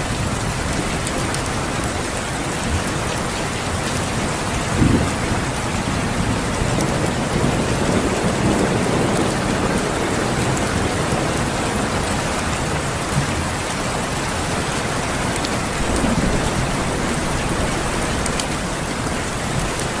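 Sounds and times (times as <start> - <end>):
heavy rain falling: 0.0 - 20.0
low rumble of thunder: 4.1 - 13.6, 14.3 - 20.0.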